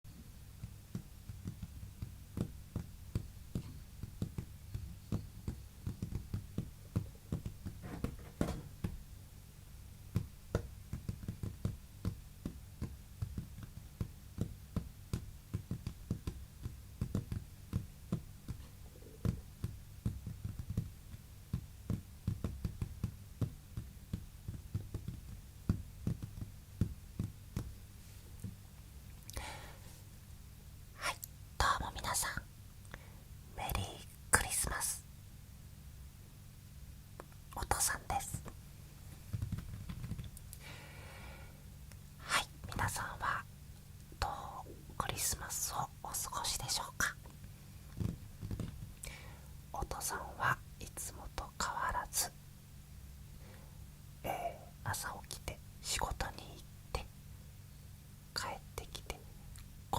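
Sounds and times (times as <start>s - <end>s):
steady low hum: 0.1s - 59.9s
light tapping and knocking: 0.6s - 9.1s, 10.1s - 27.8s, 37.2s - 40.4s, 47.9s - 49.2s.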